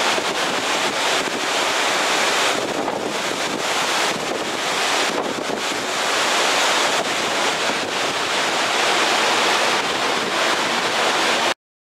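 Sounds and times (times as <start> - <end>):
strong wind buffeting microphone: 0.0 - 11.5.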